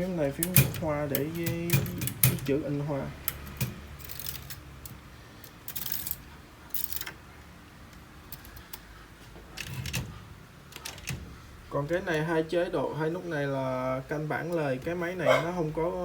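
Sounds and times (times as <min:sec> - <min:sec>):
typewriter mechanism clacking: 0:00.0 - 0:07.2, 0:09.6 - 0:11.4.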